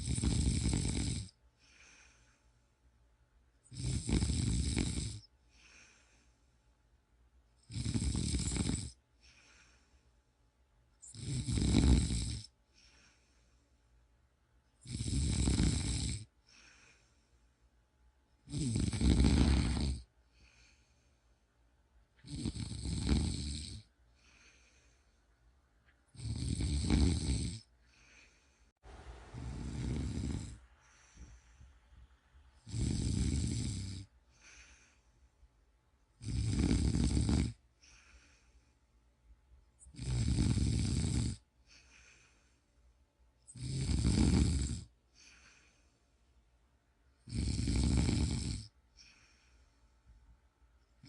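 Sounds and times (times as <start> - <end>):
person snoring loudly: 0.0 - 1.3, 3.7 - 5.3, 7.6 - 9.0, 11.0 - 12.5, 14.8 - 16.3, 18.5 - 20.1, 22.2 - 23.9, 26.2 - 27.7, 29.3 - 30.7, 32.6 - 34.1, 36.2 - 37.6, 39.8 - 41.4, 43.5 - 44.9, 47.3 - 48.7
faint breaths: 0.0 - 3.0, 5.2 - 7.0, 8.9 - 11.1, 12.4 - 14.2, 16.2 - 18.0, 19.2 - 21.8, 23.8 - 26.1, 27.6 - 36.2, 37.4 - 40.2, 41.4 - 43.6, 44.8 - 46.5, 48.6 - 51.0.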